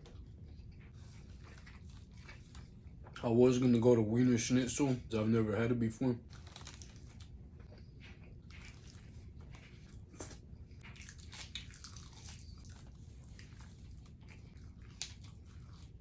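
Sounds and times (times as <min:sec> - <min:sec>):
person chewing food: 0:00.0 - 0:03.2, 0:06.2 - 0:16.0
crunches of food: 0:06.2 - 0:16.0.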